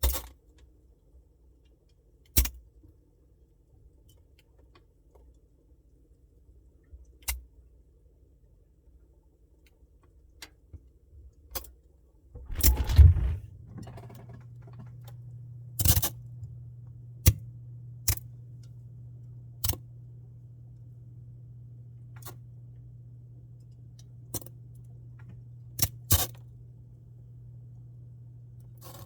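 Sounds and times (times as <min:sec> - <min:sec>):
loud low thump and rattle: 0:12.4 - 0:14.3
refrigerator clicks and ticks: 0:12.4 - 0:14.4
refrigerator compressor hum: 0:12.4 - 0:29.0.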